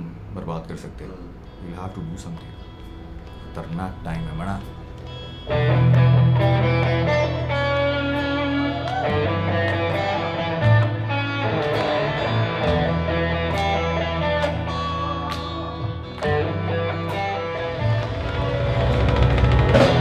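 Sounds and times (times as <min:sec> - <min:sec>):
fusion band music led by guitar: 0:04.2 - 0:20.0.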